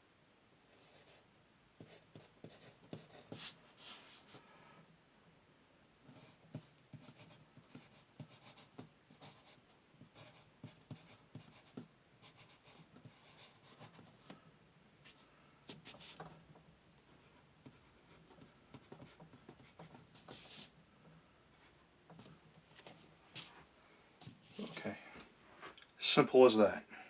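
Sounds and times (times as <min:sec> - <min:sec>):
pen scratching on paper: 0:00.7 - 0:01.2, 0:01.8 - 0:04.4, 0:06.1 - 0:14.2, 0:17.3 - 0:20.7.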